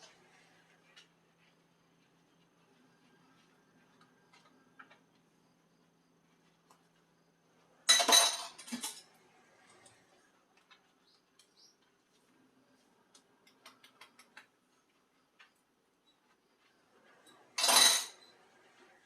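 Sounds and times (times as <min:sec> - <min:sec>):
dishes and cutlery clinking: 0:07.9 - 0:09.1, 0:17.2 - 0:18.3
dishes clattering: 0:07.9 - 0:09.1, 0:17.4 - 0:18.3.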